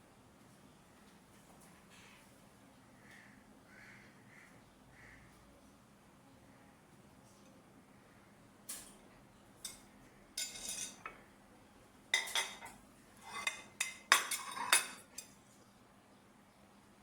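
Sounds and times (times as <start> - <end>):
metal spoon clinking on glass: 10.4 - 11.1, 12.2 - 15.3.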